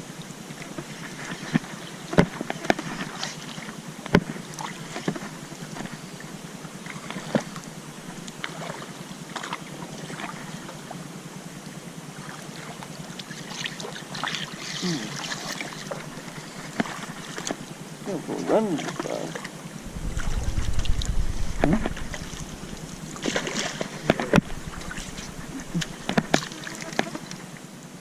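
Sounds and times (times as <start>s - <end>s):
water noise: 0.0s - 28.0s
wind noise: 19.8s - 26.3s.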